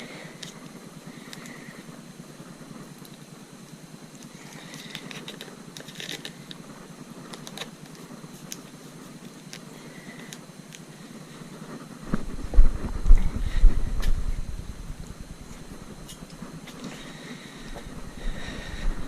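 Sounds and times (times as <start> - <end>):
faint clicks and rustling of tape: 0.0 - 14.2, 15.0 - 18.0
low uneven rumble with thumps: 11.0 - 19.0.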